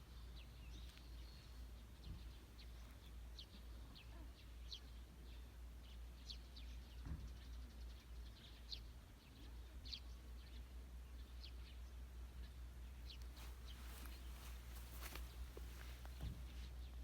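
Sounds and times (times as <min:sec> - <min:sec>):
small birds chirping: 0:00.0 - 0:17.0
soft low thump: 0:13.4 - 0:16.6.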